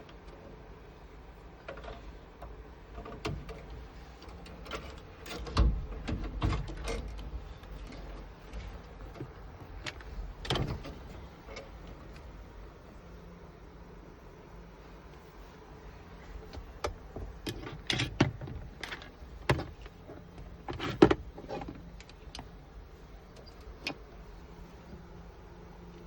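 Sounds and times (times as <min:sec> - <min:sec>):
tools clicking and knocking on car door: 0:04.4 - 0:12.0, 0:16.5 - 0:22.5.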